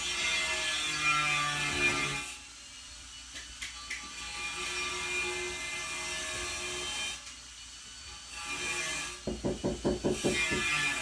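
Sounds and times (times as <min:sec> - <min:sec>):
rapid knocks: 0:09.2 - 0:10.8.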